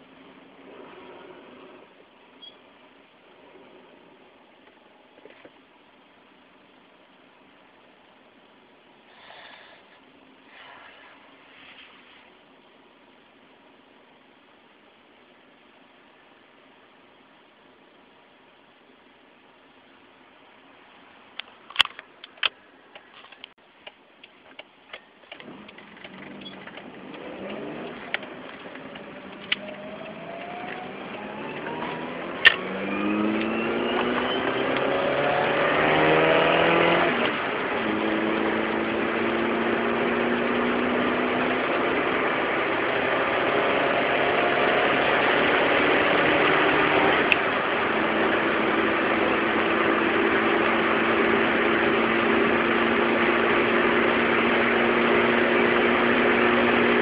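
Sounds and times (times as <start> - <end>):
car accelerating: 25.4 - 57.0
humming tone rising in pitch: 29.1 - 37.1.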